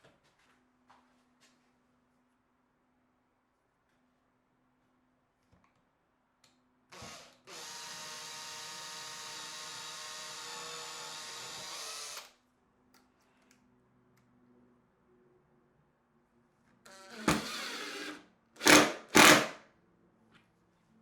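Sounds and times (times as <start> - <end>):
power tool motor running: 7.0 - 12.3, 16.9 - 19.5.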